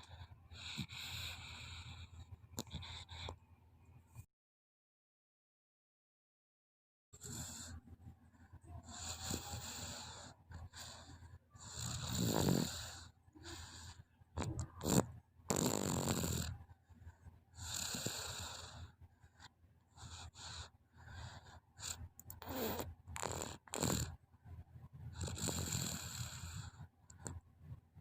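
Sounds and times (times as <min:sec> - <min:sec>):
child snoring: 0:00.6 - 0:02.0, 0:07.2 - 0:07.8, 0:08.8 - 0:16.6, 0:17.6 - 0:19.0, 0:20.0 - 0:24.2, 0:25.2 - 0:26.8.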